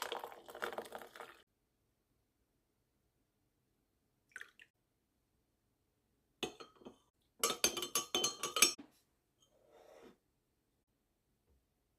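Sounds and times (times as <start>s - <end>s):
metal spoon clinking glass: 6.4s - 8.8s.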